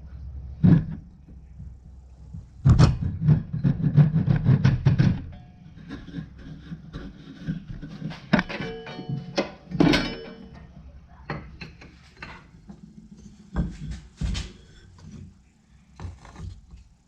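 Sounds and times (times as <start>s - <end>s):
rapid knocking or scraping: 0.5s - 9.2s.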